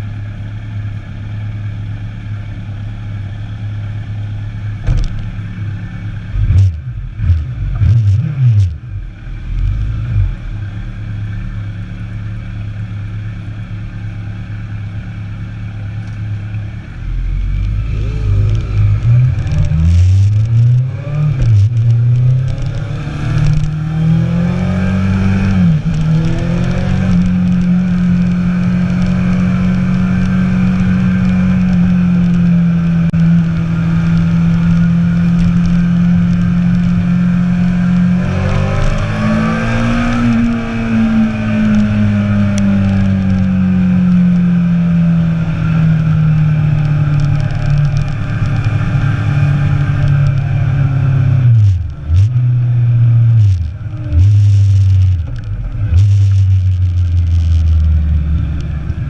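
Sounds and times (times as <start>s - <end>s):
motorcycle engine revving: 16.8s - 59.0s.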